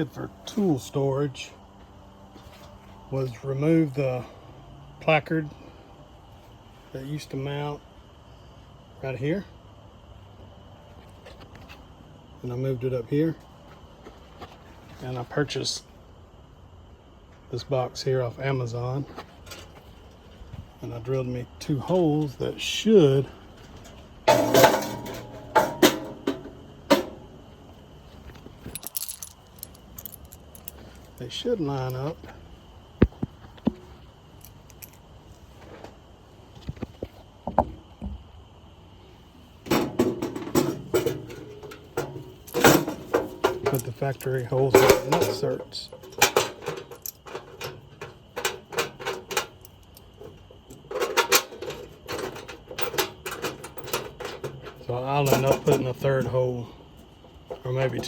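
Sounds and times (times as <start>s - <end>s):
metal toolbox clanking: 24.3s - 27.2s, 39.7s - 49.6s, 50.8s - 56.2s
metallic rattling and clicking: 28.6s - 31.1s, 40.6s - 50.1s.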